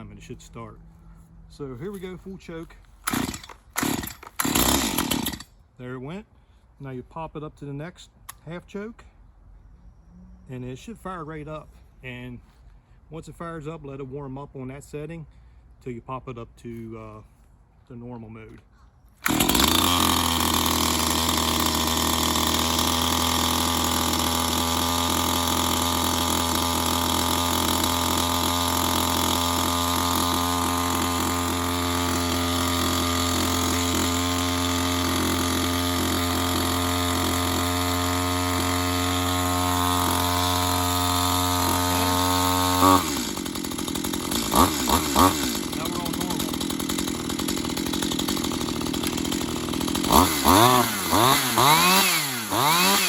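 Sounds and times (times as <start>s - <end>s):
chainsaw engine running: 1.6s - 5.5s, 19.2s - 53.0s.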